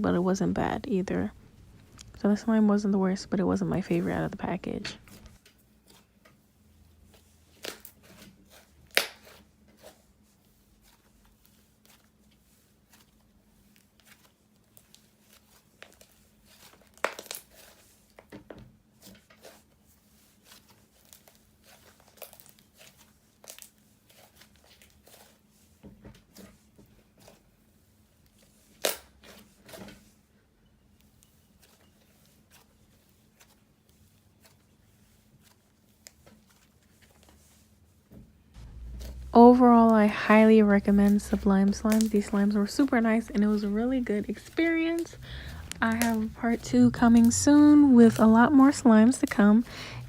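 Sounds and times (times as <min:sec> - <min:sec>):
slime crackling and popping: 0:14.8 - 0:17.7, 0:40.9 - 0:42.6, 0:43.3 - 0:50.0.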